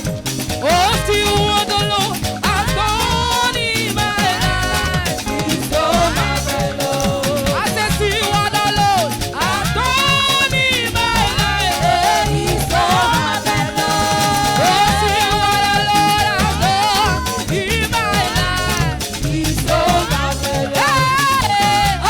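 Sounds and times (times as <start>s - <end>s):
band with driving beat: 0.0s - 22.0s
choir singing: 3.2s - 7.9s, 9.4s - 22.0s.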